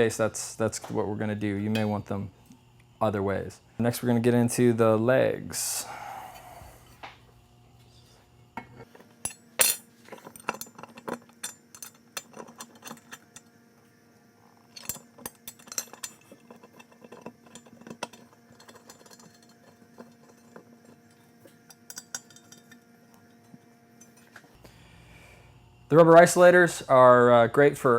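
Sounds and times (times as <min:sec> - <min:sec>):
metal hardware clinking and knocking: 0:08.6 - 0:13.4, 0:14.7 - 0:20.6, 0:21.7 - 0:22.8.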